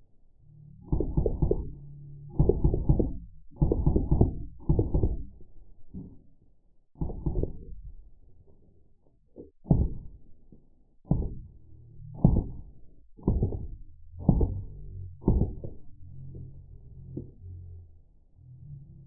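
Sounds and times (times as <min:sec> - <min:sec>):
slowed-down gun shots as dull thumps: 0:00.8 - 0:06.2, 0:07.0 - 0:08.0, 0:09.6 - 0:10.4, 0:11.0 - 0:15.9.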